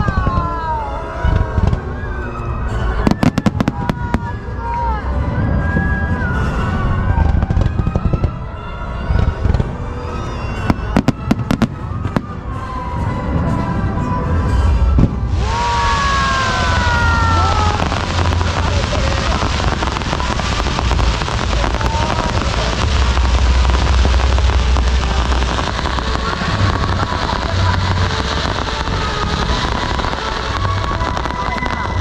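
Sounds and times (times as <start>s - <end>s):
fireworks crackling: 3.0s - 4.7s, 9.1s - 12.8s, 14.5s - 32.0s
deep fireworks booming: 14.8s - 32.0s
sharp firework crack: 15.0s - 32.0s.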